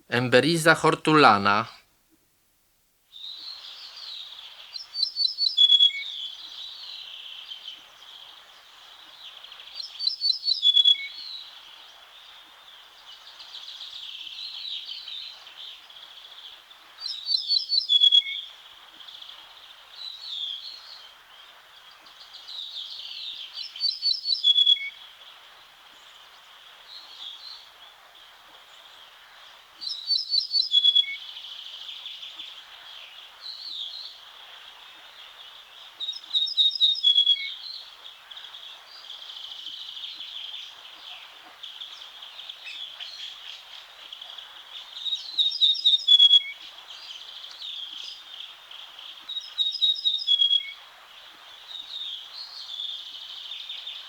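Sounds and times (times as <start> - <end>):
bunting singing: 0.0 - 1.8.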